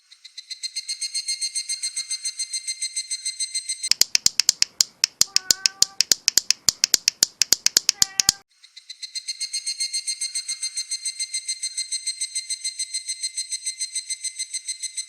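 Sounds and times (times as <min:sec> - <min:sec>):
clicker toy clicking: 0:03.9 - 0:08.4.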